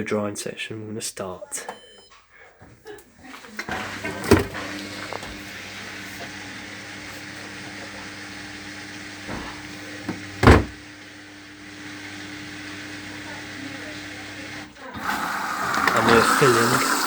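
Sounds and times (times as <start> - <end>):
water hissing into washing machine: 3.4 - 17.0
knocks and thump: 9.3 - 10.8.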